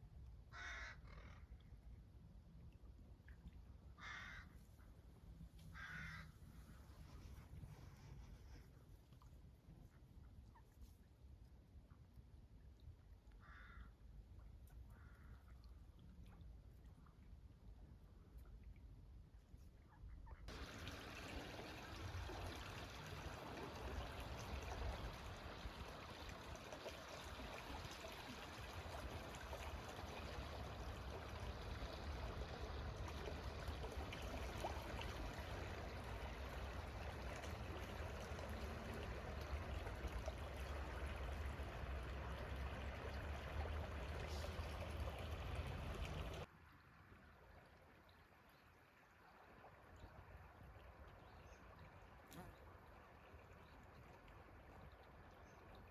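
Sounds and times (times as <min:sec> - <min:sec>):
river water rushing: 0:20.5 - 0:46.5.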